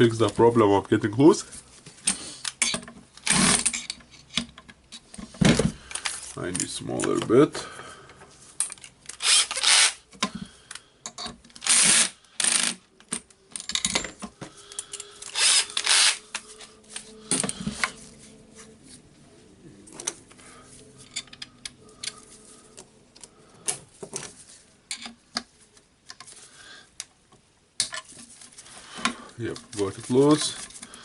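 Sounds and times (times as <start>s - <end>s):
screwdriver clicks and scrapes: 8.6s - 10.3s, 11.1s - 13.9s, 14.7s - 18.0s
tools rattling: 11.0s - 18.1s, 19.9s - 25.2s.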